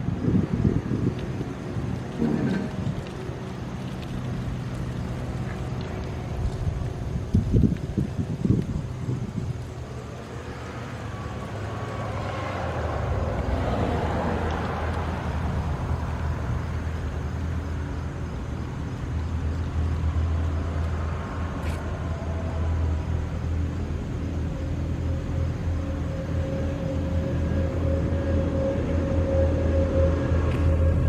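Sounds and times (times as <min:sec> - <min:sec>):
steady low rumble: 0:00.0 - 0:31.0
vehicle passing: 0:00.0 - 0:31.0
mechanical siren winding down: 0:25.7 - 0:31.0.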